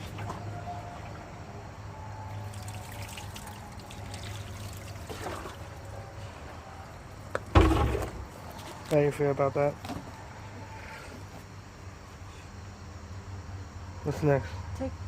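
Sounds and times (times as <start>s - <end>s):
water trickling: 2.3s - 6.4s.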